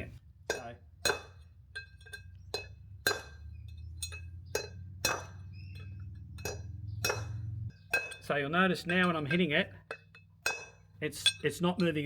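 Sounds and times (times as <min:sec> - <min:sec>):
hammer striking metal: 0:00.5 - 0:12.0.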